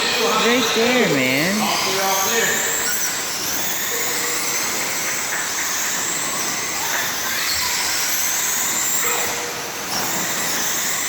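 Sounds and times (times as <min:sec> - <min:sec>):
rc car motors whining: 0:01.6 - 0:09.0.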